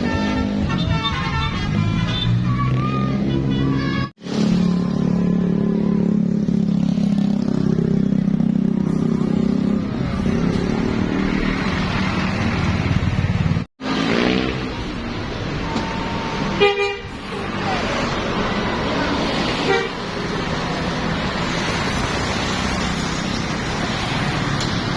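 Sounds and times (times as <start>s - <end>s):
engine and road noise: 0.0s - 24.9s
engine revving: 4.2s - 15.0s.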